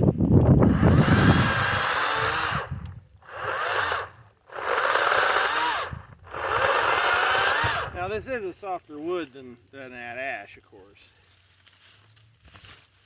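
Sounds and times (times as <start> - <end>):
electric chainsaw cutting wood: 0.5 - 8.1.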